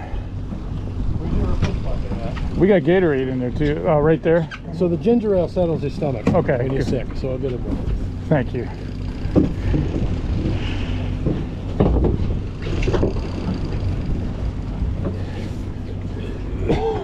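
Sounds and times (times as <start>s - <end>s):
boat engine humming: 0.0s - 17.0s
wind buffeting microphone: 5.2s - 17.0s.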